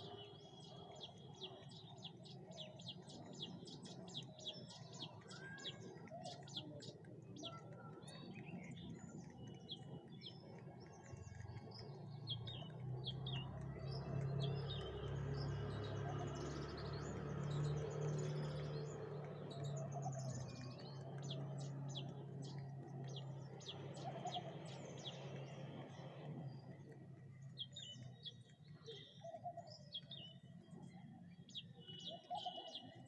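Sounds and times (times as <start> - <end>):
birds chirping: 0.0 - 33.0.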